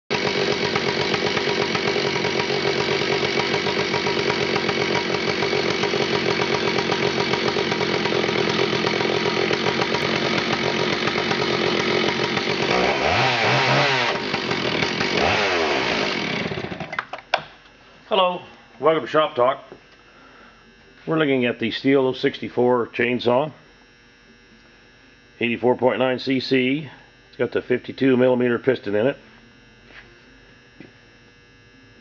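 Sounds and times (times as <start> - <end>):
chainsaw running and revving: 0.1 - 17.0.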